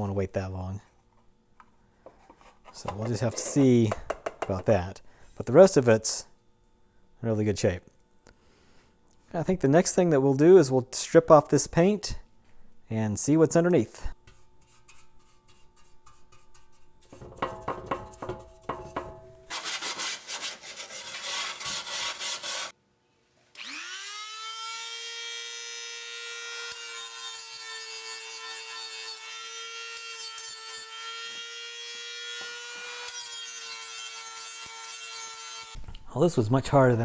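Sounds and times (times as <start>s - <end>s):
scraping on metal toy: 2.2s - 3.8s, 14.3s - 22.7s.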